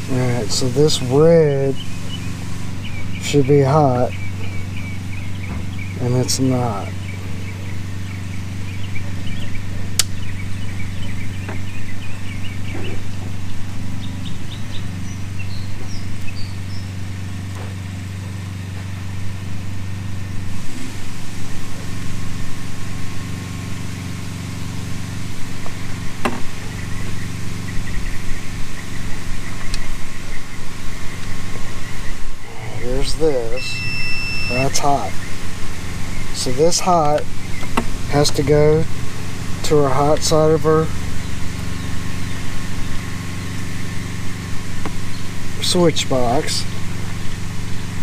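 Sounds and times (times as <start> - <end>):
low mechanical hum: 0.0 - 48.0
sharp clicks: 10.0 - 10.2
faint high chirps: 31.8 - 36.4.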